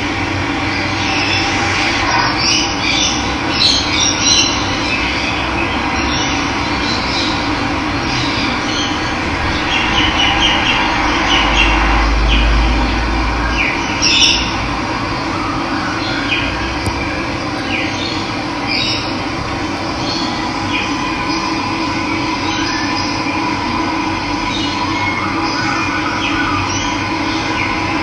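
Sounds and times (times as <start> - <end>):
birds chirping: 16.0 - 23.2
low rumble: 16.6 - 24.5
water rushing: 17.5 - 23.0.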